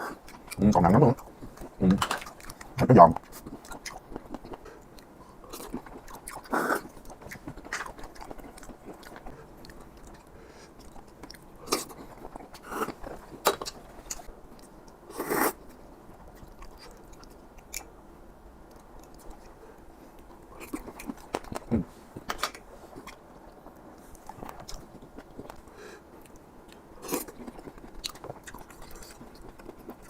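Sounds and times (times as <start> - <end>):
close-up chewing: 0.0 - 15.0, 16.1 - 17.9, 18.7 - 22.3, 22.9 - 30.0.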